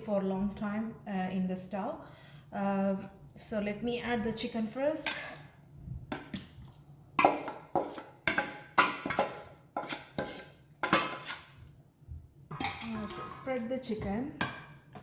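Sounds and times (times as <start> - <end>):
metal utensil clinking on cookware: 12.5 - 13.5.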